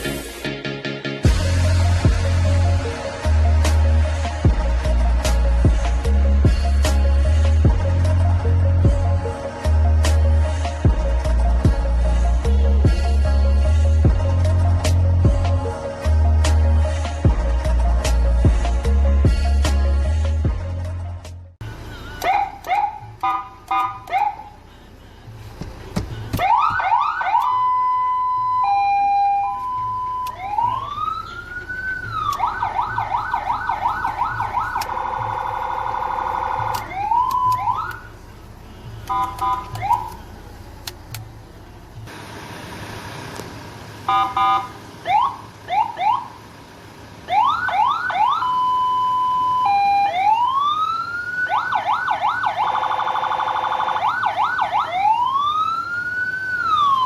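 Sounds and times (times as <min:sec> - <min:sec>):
electronic siren wails and yelps: 0:22.2 - 0:24.5, 0:26.4 - 0:38.1, 0:39.1 - 0:40.1, 0:44.1 - 0:46.4, 0:47.3 - 0:57.0.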